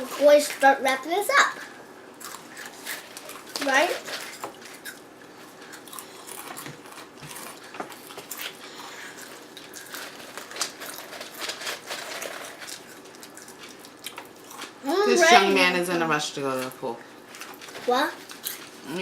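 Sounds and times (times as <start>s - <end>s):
chewing crunchy snacks: 2.2s - 14.8s, 17.3s - 19.0s.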